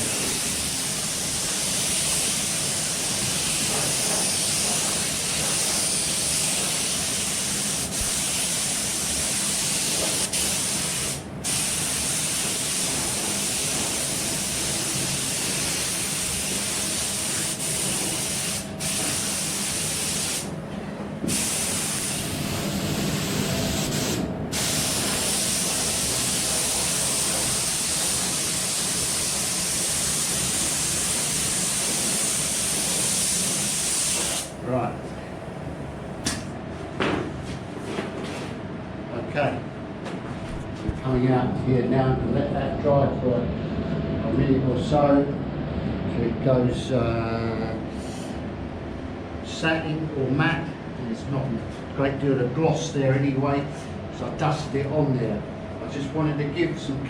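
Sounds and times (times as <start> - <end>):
spray gun hissing: 0.0 - 20.5, 21.3 - 34.6.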